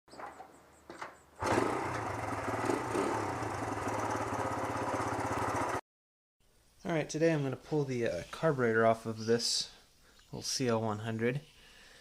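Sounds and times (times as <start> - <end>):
motorcycle engine running: 1.4 - 5.8.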